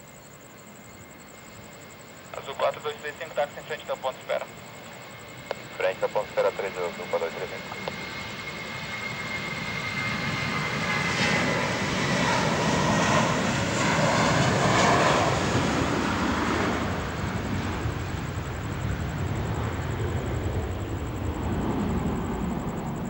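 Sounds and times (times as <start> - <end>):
aircraft engine passing: 0.0 - 23.0
high turbine whine: 0.0 - 23.0.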